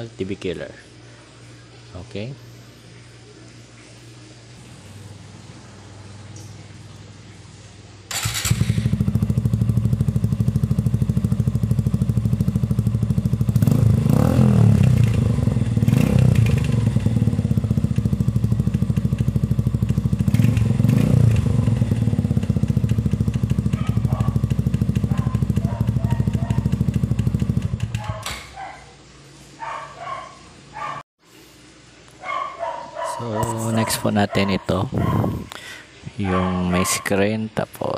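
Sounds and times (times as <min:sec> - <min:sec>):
motorcycle engine idling and revving: 0:08.1 - 0:28.6.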